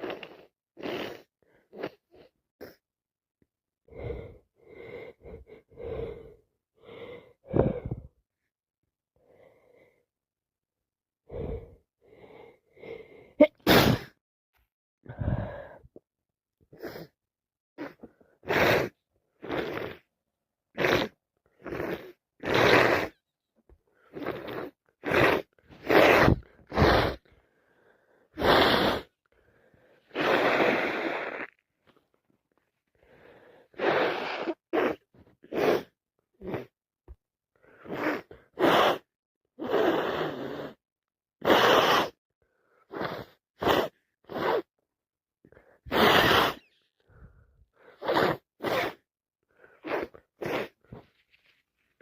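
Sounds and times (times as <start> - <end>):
person sneezing: 13.4 - 14.2, 24.2 - 27.2.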